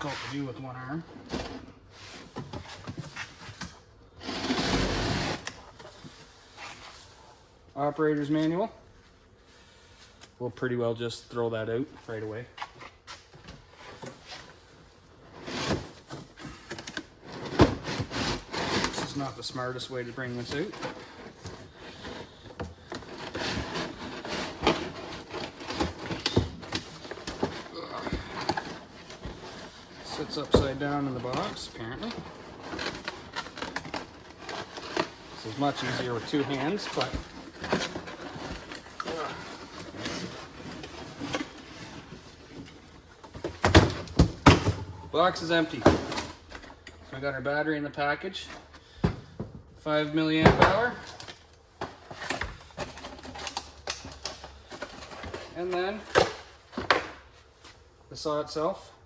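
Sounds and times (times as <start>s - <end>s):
cardboard scraping rustle: 4.2s - 7.1s
cardboard packaging rustling: 15.4s - 44.5s.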